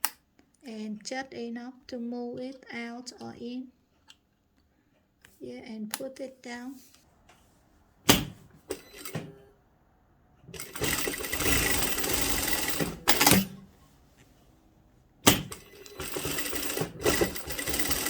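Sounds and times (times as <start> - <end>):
sewing machine click: 8.1 - 9.4, 10.6 - 13.7, 15.2 - 18.0
sewing machine stitching: 8.1 - 9.4, 10.5 - 13.7, 15.3 - 18.0.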